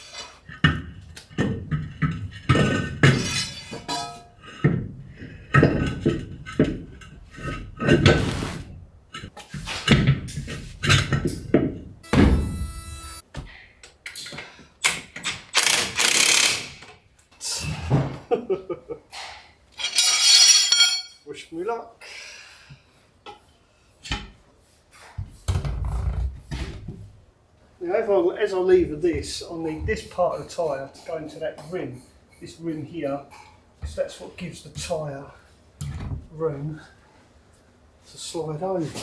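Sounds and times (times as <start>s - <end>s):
ringing metallic clang: 3.3s - 4.4s, 19.8s - 21.2s.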